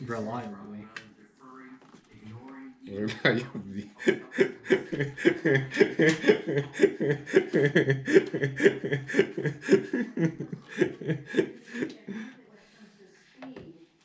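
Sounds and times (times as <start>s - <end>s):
man laughing: 3.1s - 12.0s.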